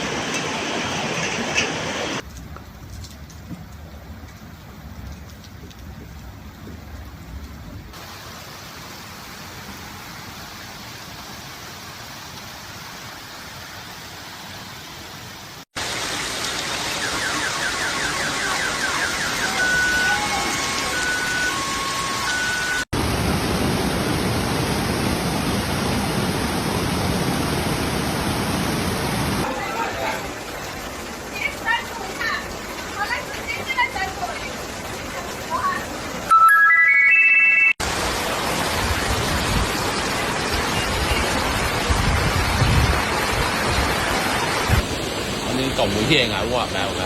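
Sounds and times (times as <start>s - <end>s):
heavy rain: 0.0s - 36.3s, 37.8s - 47.0s
floodwater rushing: 0.0s - 47.0s
electronic alarm beeping: 17.3s - 22.9s, 36.3s - 37.8s.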